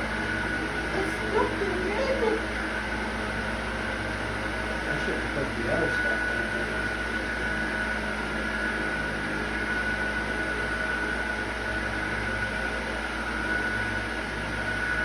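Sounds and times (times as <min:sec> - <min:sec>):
fan motor hum with high whine: 0:00.0 - 0:15.0.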